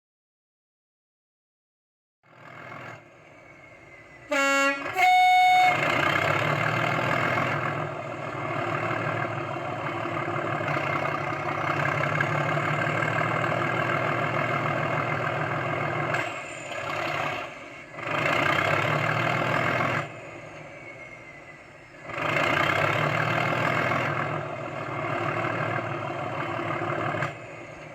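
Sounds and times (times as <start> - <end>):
diesel engine sound: 2.2 - 27.9
two-tone horn blast: 4.3 - 6.6.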